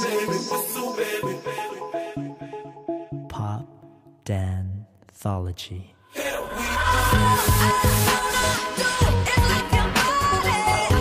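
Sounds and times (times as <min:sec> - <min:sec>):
pop music with electronic beat: 0:00.0 - 0:03.6, 0:06.1 - 0:11.0.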